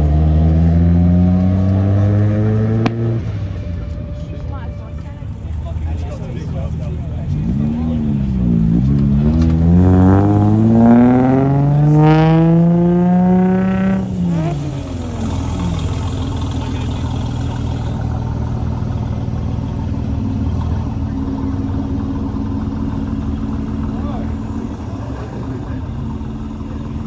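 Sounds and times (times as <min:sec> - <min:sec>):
car engine revving: 0:00.0 - 0:27.0
engine idling: 0:02.8 - 0:09.7, 0:12.5 - 0:27.0.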